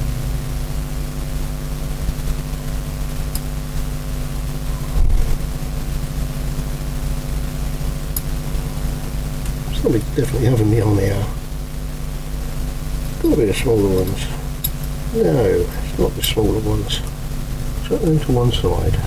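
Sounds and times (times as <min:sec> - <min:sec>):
steady mechanical hum: 0:00.0 - 0:19.0.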